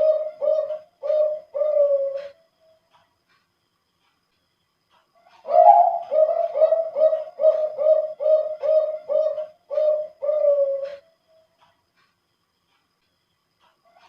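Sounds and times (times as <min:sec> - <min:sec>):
dove cooing: 0:00.0 - 0:02.4, 0:05.4 - 0:11.1.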